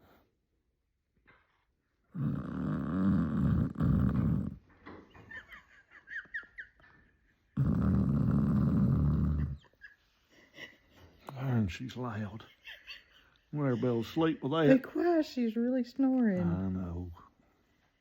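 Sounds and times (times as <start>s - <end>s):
pet snoring loudly: 2.1s - 4.6s, 7.6s - 9.6s.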